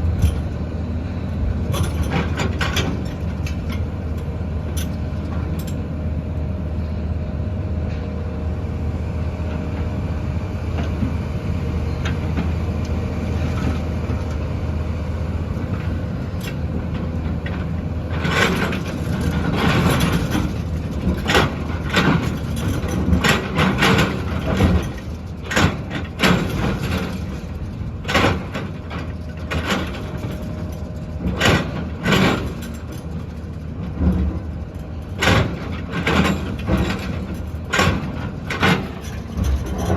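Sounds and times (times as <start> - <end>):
diesel engine running: 0.0 - 39.9
machine clanks and knocks: 1.6 - 5.9, 15.6 - 39.9.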